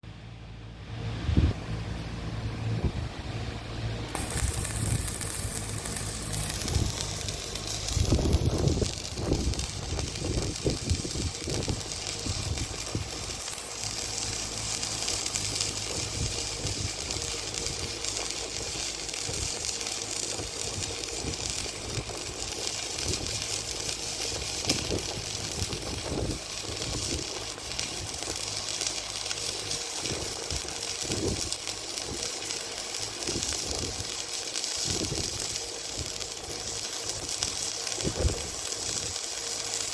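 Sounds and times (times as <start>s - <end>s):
low hum: 0.0s - 28.4s
welding arc crackling hiss: 4.0s - 39.9s.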